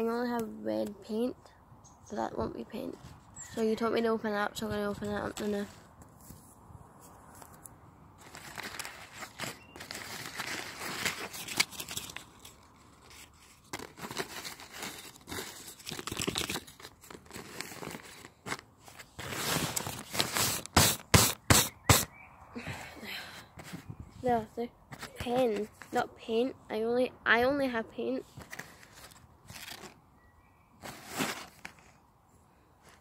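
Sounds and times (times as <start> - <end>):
paper rustling and crinkling: 8.2 - 22.0, 24.9 - 26.0, 28.3 - 30.0, 30.8 - 32.0
sharp paper crackles: 8.2 - 22.1, 28.3 - 30.0, 30.8 - 32.0.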